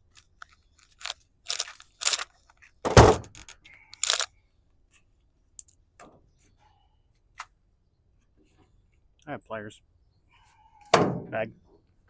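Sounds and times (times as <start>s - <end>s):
metal tools clattering in bag: 2.9s - 4.2s.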